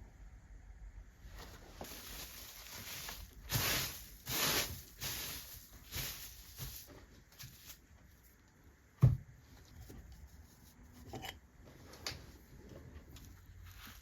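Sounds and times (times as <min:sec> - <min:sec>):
rustling handling noise: 0:01.2 - 0:08.6, 0:11.6 - 0:14.0.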